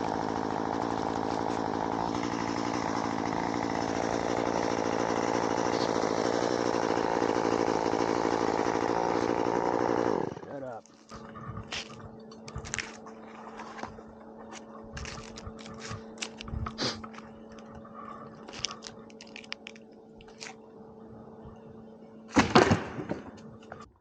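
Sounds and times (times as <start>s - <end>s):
climbing gear scraping bark: 0.0s - 20.6s
steady hum: 0.0s - 23.9s
crunching scrape: 10.8s - 20.6s.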